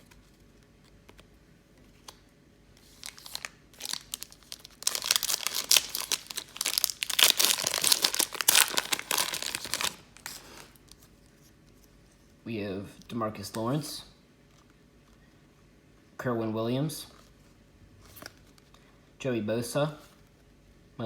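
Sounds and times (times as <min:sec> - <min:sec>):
card pack wrapper tearing and crinkling: 0:02.8 - 0:11.1.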